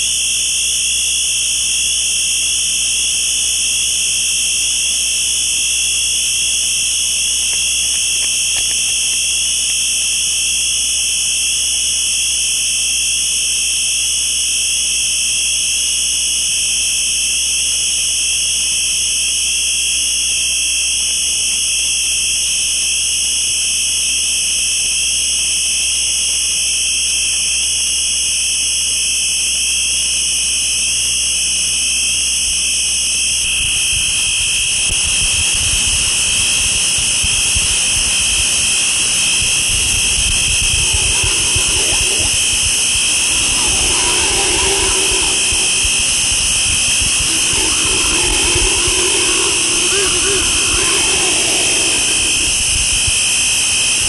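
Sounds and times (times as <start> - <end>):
low hum: 39.5 - 54.0
low fluttering rumble: 39.8 - 54.0
shrill high-pitched noise: 40.5 - 53.4.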